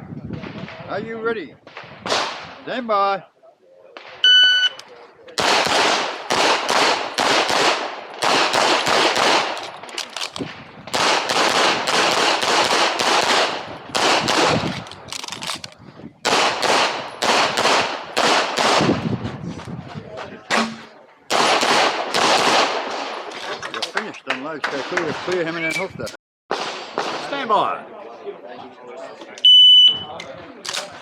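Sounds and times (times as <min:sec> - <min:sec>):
pistol shots with echo: 0:05.4 - 0:09.9, 0:10.9 - 0:14.8, 0:16.2 - 0:19.0, 0:20.5 - 0:23.3.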